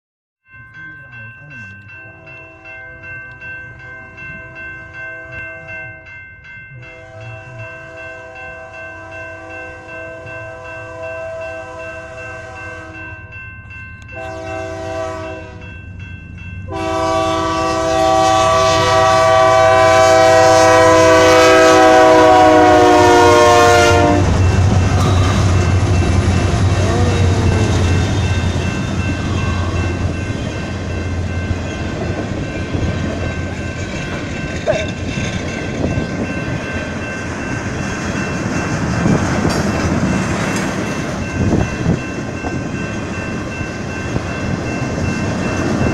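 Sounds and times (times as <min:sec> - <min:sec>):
locomotive horn blasts: 0:02.0 - 0:02.7, 0:06.8 - 0:13.1, 0:14.2 - 0:15.7, 0:16.7 - 0:25.9
freight cars rumbling and clacking: 0:24.3 - 0:45.9.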